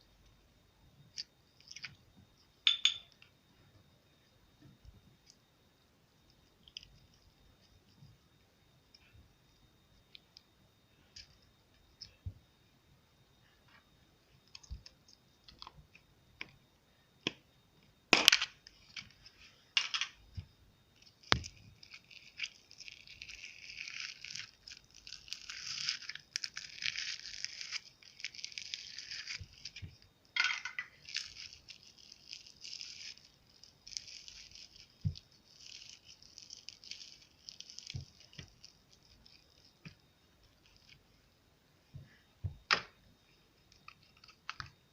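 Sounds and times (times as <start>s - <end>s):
wet crackling of slime: 21.0s - 30.1s, 30.9s - 41.1s.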